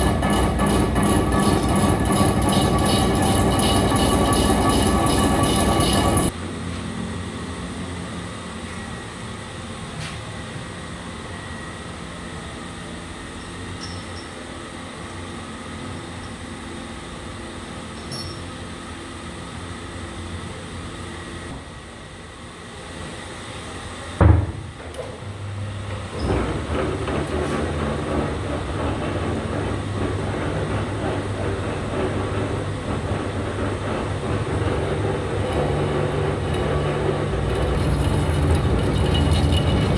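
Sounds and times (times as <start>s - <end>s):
lathe machinery humming: 0.0s - 9.0s, 25.5s - 39.9s.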